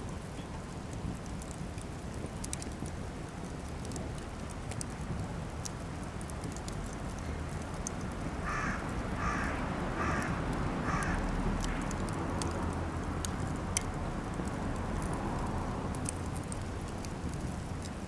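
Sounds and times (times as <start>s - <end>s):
campfire crackling and popping: 0.0s - 18.0s
crow cawing: 8.4s - 11.9s.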